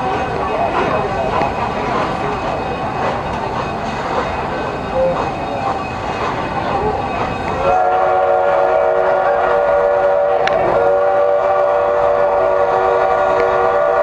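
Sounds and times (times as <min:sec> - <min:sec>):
train noise: 0:00.0 - 0:14.0
steam locomotive whistle chord: 0:06.6 - 0:14.0.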